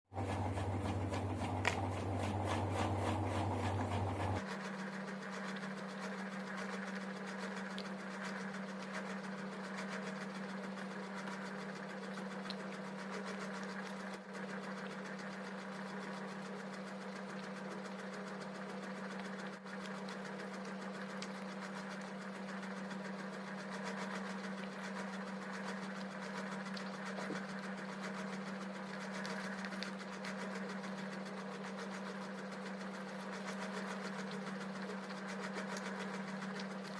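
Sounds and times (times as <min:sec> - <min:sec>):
steady low machine hum: 0:00.1 - 0:09.7.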